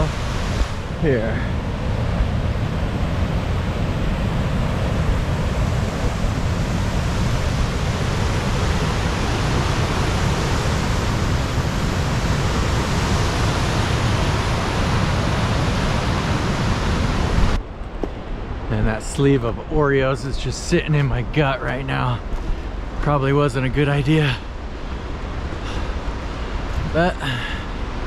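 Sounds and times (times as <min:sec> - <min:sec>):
deep churning water rumble: 0:00.0 - 0:18.8
creek water rushing: 0:00.0 - 0:28.0.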